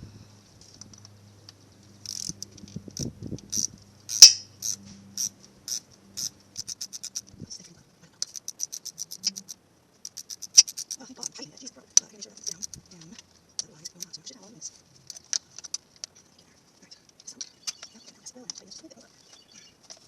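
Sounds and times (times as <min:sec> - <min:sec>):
ratchet wrench clicking: 0:02.0 - 0:07.2, 0:08.2 - 0:11.0
sharp metal knock: 0:04.2 - 0:04.6.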